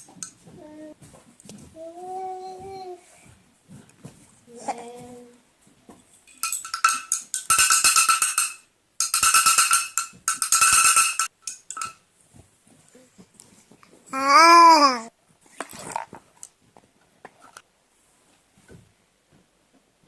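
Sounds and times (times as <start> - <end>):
jingling rattle shaken: 6.1 - 12.0
baby vocalising: 14.1 - 15.1.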